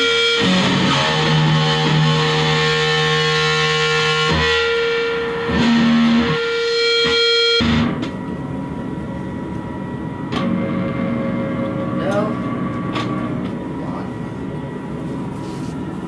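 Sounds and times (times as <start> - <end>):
distorted electric guitar notes: 0.0 - 8.7, 9.8 - 13.8
amp hum: 0.0 - 16.0.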